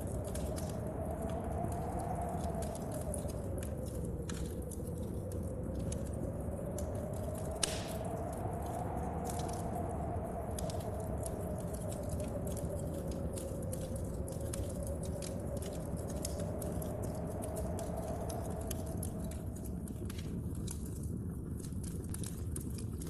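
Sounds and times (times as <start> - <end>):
fire crackling in a stove: 0.0 - 23.0
rain: 0.0 - 23.0
wind: 0.0 - 23.0.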